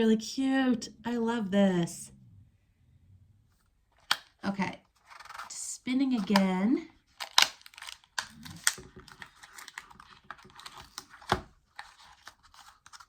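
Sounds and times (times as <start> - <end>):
plastic toy clicking and rattling: 7.1 - 11.3.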